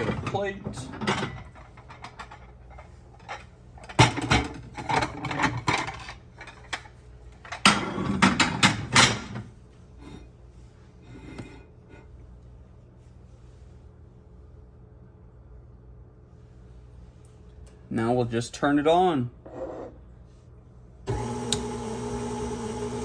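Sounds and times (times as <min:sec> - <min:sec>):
kitchenware clattering on counter: 0:00.0 - 0:09.5.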